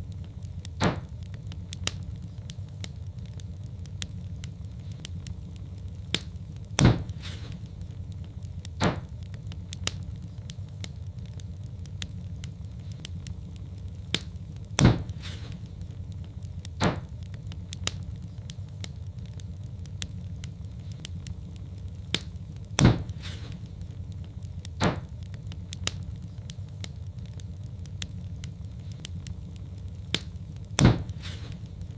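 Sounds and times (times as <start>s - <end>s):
log fire crackling and popping: 0.0s - 31.9s
low rumble of flames: 0.0s - 31.9s.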